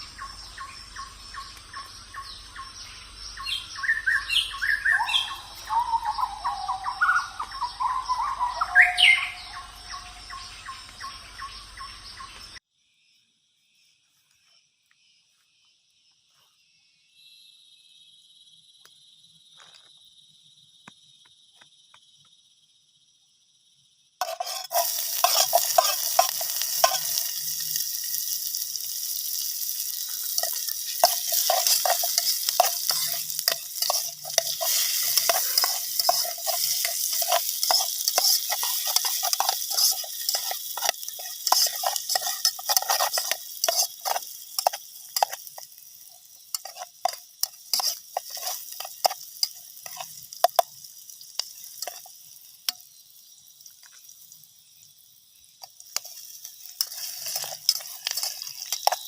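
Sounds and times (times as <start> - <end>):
food sizzling in a pan: 0.0 - 12.6, 24.2 - 59.0
utensil scraping a pan: 24.2 - 50.7, 51.4 - 52.1, 55.7 - 59.0.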